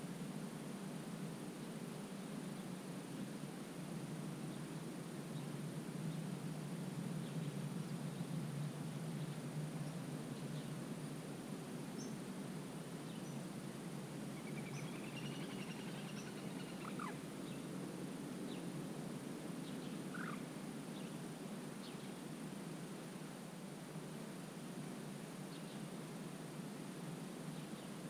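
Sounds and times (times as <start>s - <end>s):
faint bird calls: 14.4s - 17.6s, 19.6s - 20.5s.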